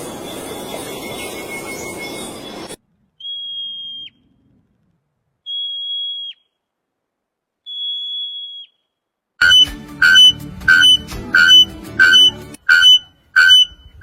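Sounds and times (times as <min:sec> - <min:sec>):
high whistle tones: 0:05.5 - 0:06.5, 0:07.6 - 0:08.8, 0:09.4 - 0:14.0.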